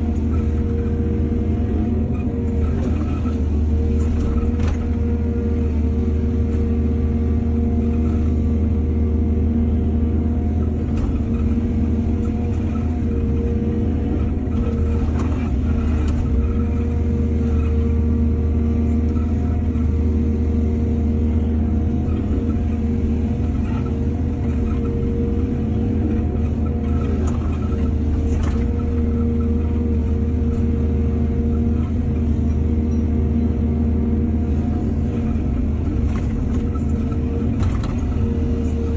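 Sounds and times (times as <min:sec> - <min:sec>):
excavator diesel engine running: 0:00.0 - 0:38.9.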